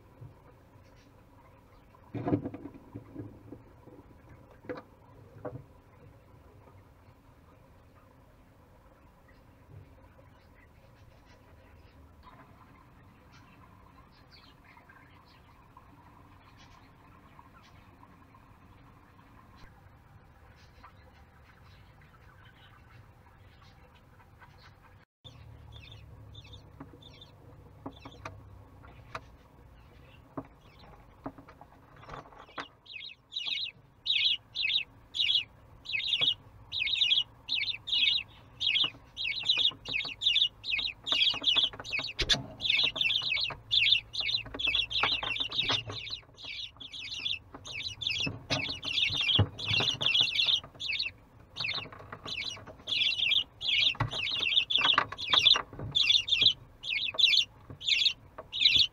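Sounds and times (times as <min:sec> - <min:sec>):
baby budgerigars chirping: 0:09.2 - 0:15.7, 0:16.3 - 0:17.9, 0:20.5 - 0:58.9.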